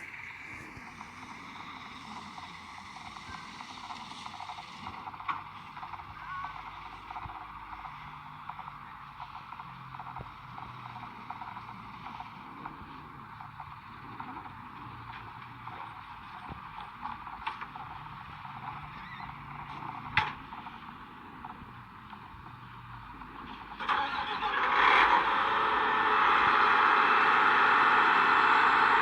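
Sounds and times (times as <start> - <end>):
combine harvester running: 0.0 - 29.0.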